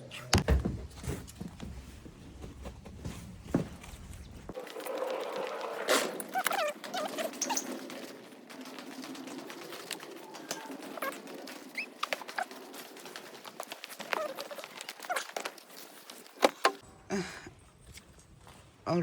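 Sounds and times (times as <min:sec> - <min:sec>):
birds chirping: 0:04.1 - 0:17.0.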